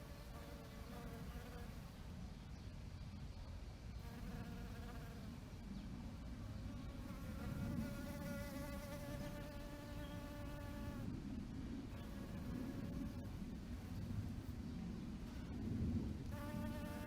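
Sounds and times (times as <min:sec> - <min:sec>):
steady low rumble: 0:10.9 - 0:16.6
bees buzzing in flight: 0:16.3 - 0:17.0.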